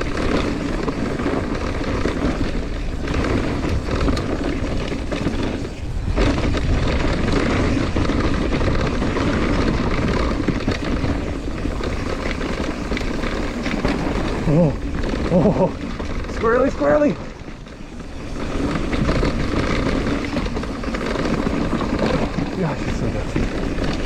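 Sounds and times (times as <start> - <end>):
bike rattling: 0.0 - 24.0
bike tyres rolling on dirt: 0.0 - 24.0
wind rush on microphone: 0.0 - 24.0.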